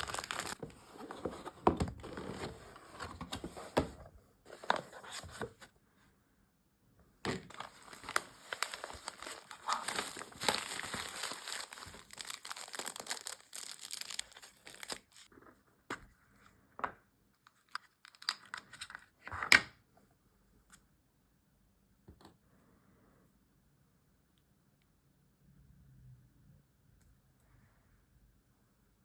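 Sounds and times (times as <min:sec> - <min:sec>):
packaging crinkling and tearing: 0:00.0 - 0:00.6, 0:07.5 - 0:15.3.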